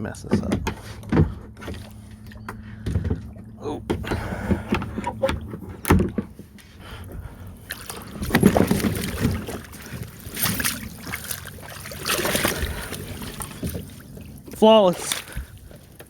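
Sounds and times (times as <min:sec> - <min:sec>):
water sloshing: 0:00.2 - 0:16.0.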